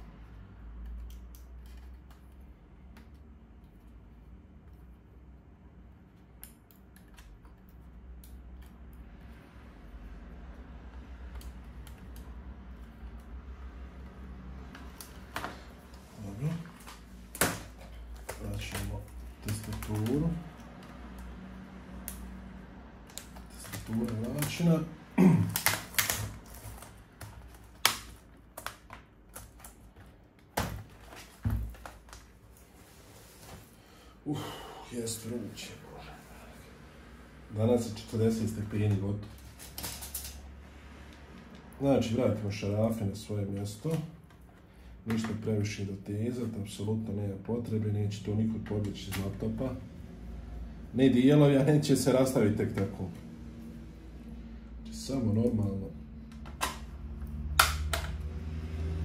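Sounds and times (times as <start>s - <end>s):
laptop parts clicking: 0.3s - 5.1s, 6.0s - 9.4s, 10.5s - 13.4s, 23.0s - 24.8s, 25.4s - 32.4s, 56.3s - 58.3s
laptop case plastic clicks: 57.6s - 58.2s.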